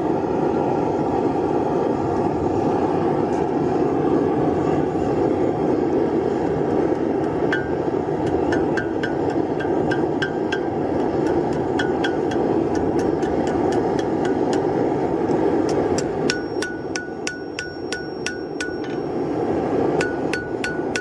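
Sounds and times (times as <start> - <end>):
forge burner rushing: 0.0 - 21.0
hammer striking steel on anvil: 7.2 - 14.7, 15.6 - 19.1, 20.0 - 21.0.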